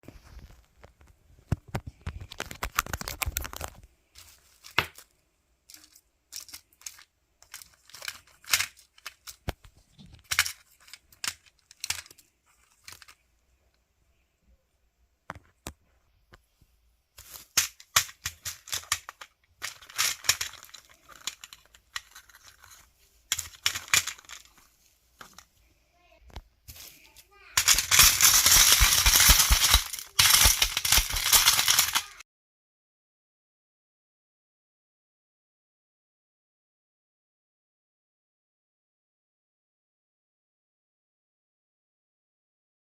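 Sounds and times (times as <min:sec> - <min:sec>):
material crinkling and tearing: 0:01.6 - 0:05.1, 0:26.7 - 0:32.2.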